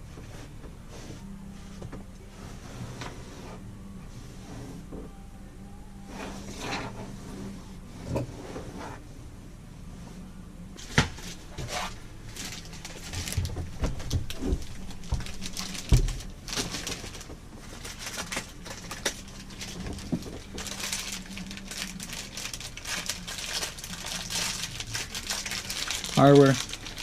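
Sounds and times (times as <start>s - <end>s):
rustling: 9.9s - 27.0s.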